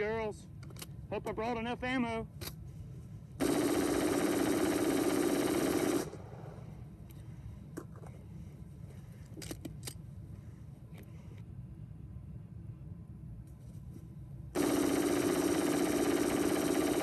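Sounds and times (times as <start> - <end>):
metallic clicks of rifle handling: 0.6 - 1.4
rifle rapid fire: 3.4 - 6.6, 14.6 - 17.0.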